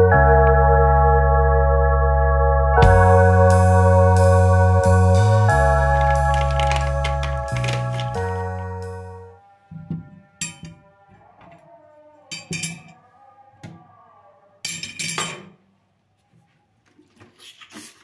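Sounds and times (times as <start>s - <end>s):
kitchenware clinking: 10.4s - 10.8s, 12.3s - 13.0s, 14.6s - 15.6s.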